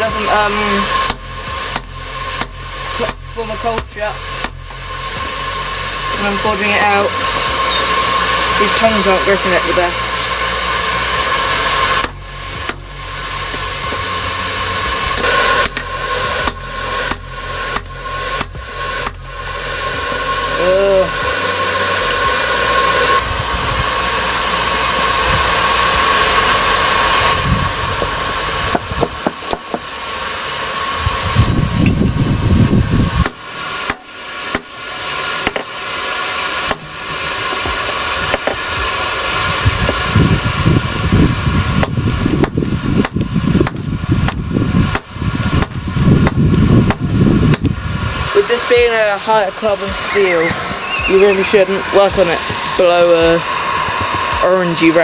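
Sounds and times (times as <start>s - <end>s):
steady rushing noise: 0.0s - 55.0s
hammer striking steel on anvil: 0.2s - 6.7s, 11.8s - 14.1s, 15.0s - 20.3s, 33.2s - 35.9s, 36.6s - 38.6s, 41.8s - 47.8s.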